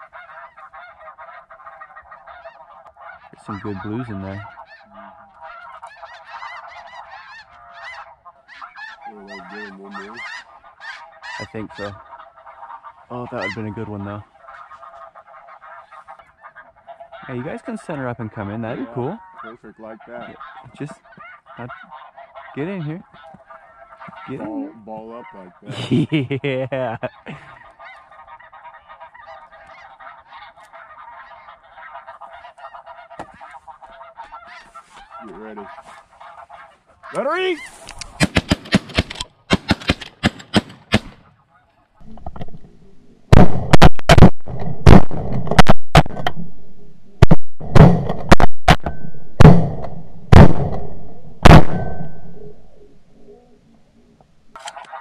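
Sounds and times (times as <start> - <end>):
flock of geese honking: 0.0 - 25.9, 27.0 - 38.3, 41.1 - 43.9, 48.1 - 55.0
shotguns firing: 38.2 - 41.2, 43.3 - 46.4, 47.2 - 52.8.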